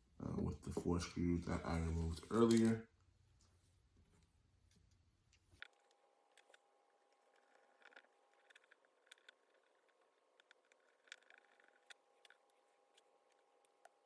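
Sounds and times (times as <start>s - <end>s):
small screwdriver clicks and scrapes: 5.6s - 14.0s.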